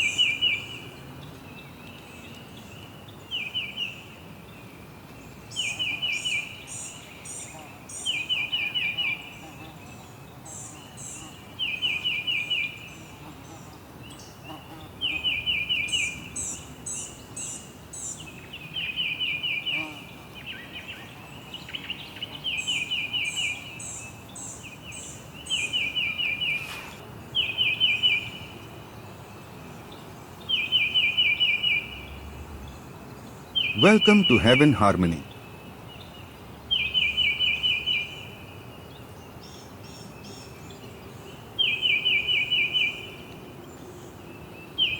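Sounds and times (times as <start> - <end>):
faint background hiss: 0.0 - 44.9
high thin chirps: 26.4 - 27.0.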